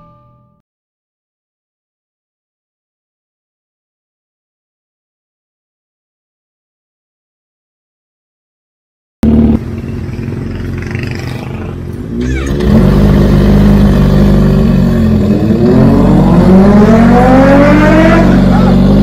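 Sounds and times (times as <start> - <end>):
motorcycle engine revving: 9.2 - 19.0.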